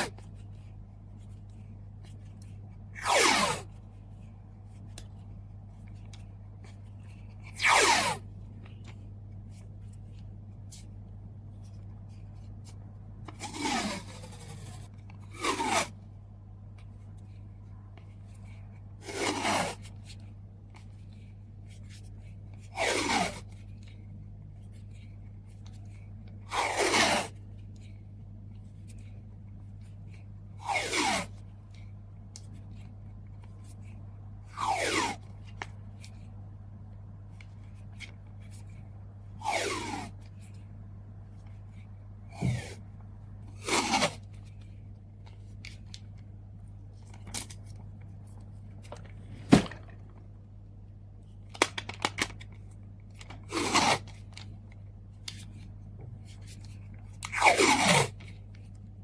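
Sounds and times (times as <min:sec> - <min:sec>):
short rasping pulls: 0:13.3 - 0:15.9
packing materials clicking: 0:51.5 - 0:52.6.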